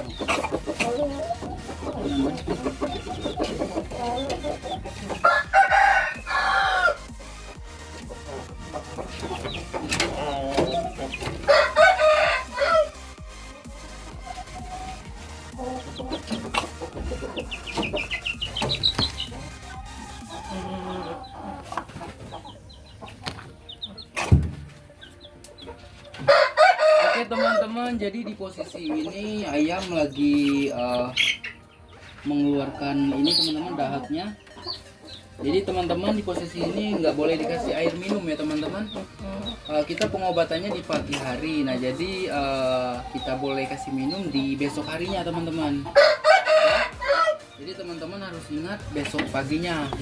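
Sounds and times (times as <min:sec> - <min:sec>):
chickens clucking: 0:00.0 - 0:50.0
rooster crowing: 0:05.2 - 0:07.0, 0:11.4 - 0:13.0, 0:26.2 - 0:27.8, 0:46.0 - 0:47.5.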